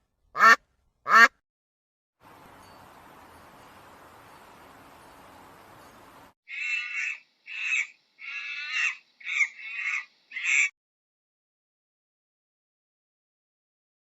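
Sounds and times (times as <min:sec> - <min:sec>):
animal giving harsh calls: 0:06.5 - 0:10.7.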